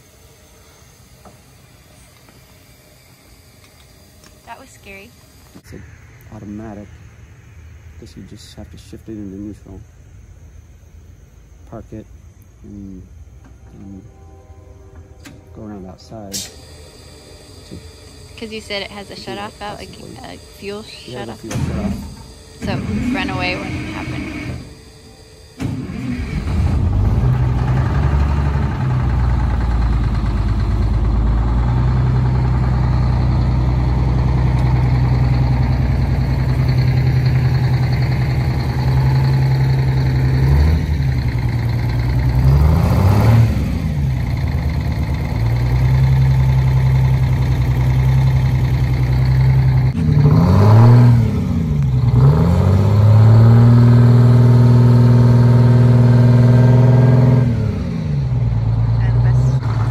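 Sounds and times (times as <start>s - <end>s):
bus diesel engine running and revving: 0.0s - 2.5s, 15.2s - 59.9s.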